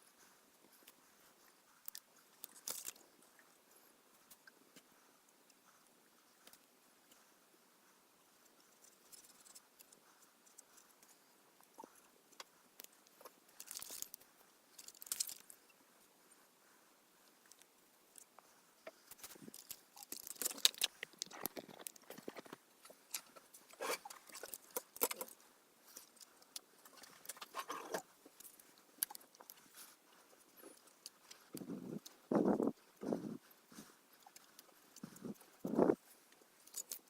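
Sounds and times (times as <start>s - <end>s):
scratching and clicking on plastic: 8.6s - 15.7s, 17.2s - 37.0s.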